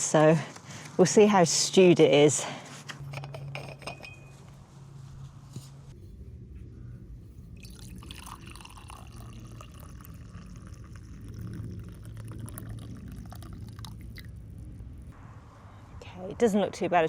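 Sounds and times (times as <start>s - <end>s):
tea pouring into a cup: 7.6s - 14.3s.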